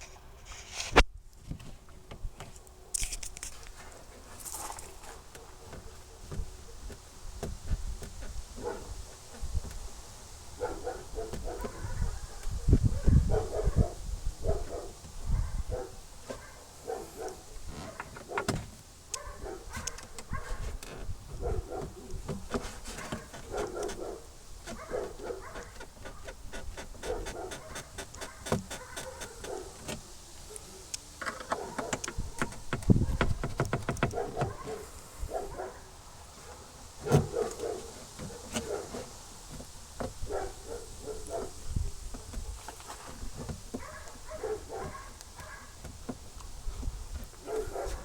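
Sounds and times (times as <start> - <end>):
car body panels squeaking: 5.1 - 9.8, 17.7 - 18.8, 19.7 - 30.1, 31.3 - 34.8, 37.0 - 40.4.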